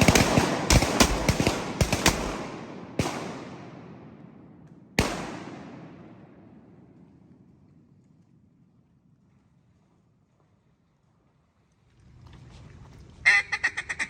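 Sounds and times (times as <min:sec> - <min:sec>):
shotgun shots: 0:00.0 - 0:07.0.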